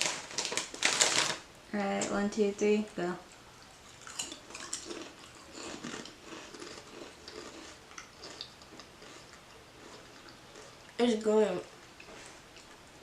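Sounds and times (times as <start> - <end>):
people chewing crisps: 0.0 - 1.4, 3.6 - 11.0, 11.6 - 13.0.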